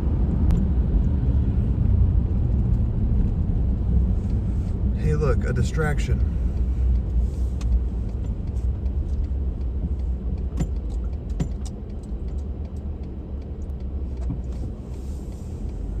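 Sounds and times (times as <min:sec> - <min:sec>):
car interior road rumble: 0:00.0 - 0:16.0
light clicks and rattles: 0:06.1 - 0:15.9.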